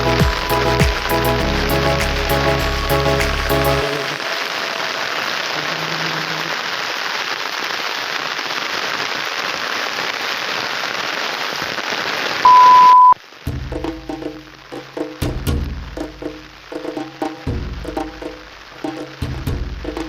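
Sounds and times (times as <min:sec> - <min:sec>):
music: 0:00.0 - 0:04.2
heavy rain falling: 0:00.0 - 0:12.4
loud steady beep: 0:12.4 - 0:13.2.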